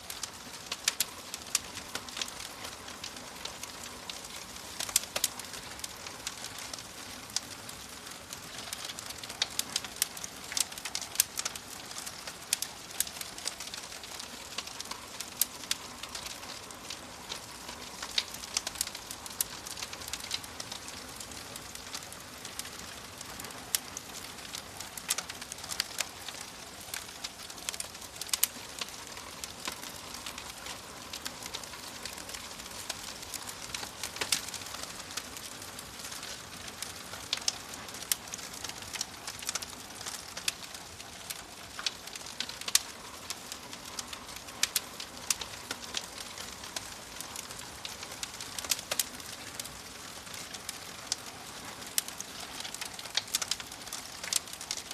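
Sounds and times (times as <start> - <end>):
wood fire crackling and popping: 0.0 - 54.9.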